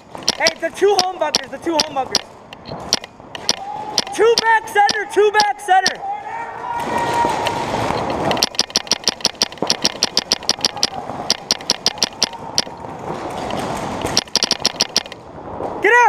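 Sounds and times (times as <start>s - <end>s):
paintball marker firing: 13.5s - 15.2s.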